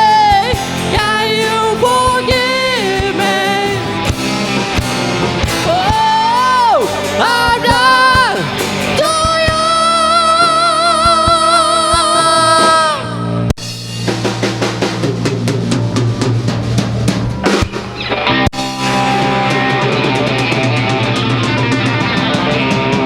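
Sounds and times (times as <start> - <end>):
person singing with vibrato: 0.0 - 4.4, 5.4 - 13.5
band playing: 0.0 - 23.0
drums and cymbals: 0.0 - 23.0.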